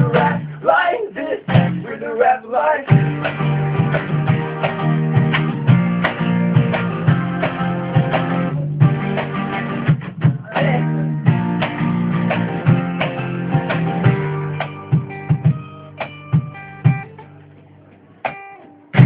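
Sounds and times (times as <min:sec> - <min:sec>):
drum hits: 0:00.0 - 0:00.4, 0:01.5 - 0:01.8, 0:02.9 - 0:17.2
strummed guitars: 0:00.0 - 0:19.0
live rock band playing: 0:02.9 - 0:17.4.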